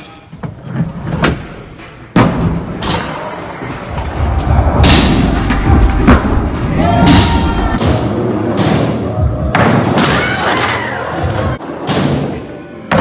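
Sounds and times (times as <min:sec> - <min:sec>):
skateboard wheels rolling: 0:02.8 - 0:13.0.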